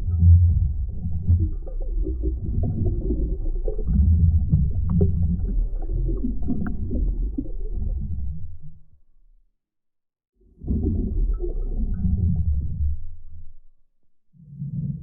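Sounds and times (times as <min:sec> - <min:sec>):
muffled underwater rumble: 0:00.0 - 0:09.4, 0:10.4 - 0:13.8
small underwater pops: 0:01.2 - 0:07.5.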